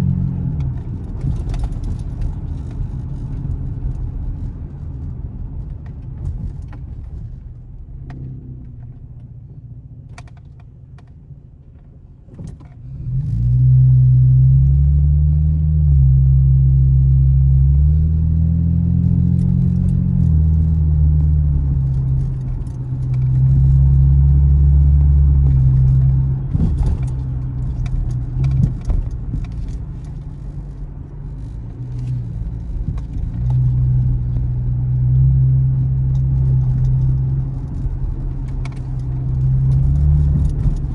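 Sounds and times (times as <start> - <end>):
car engine accelerating: 12.6 - 40.9.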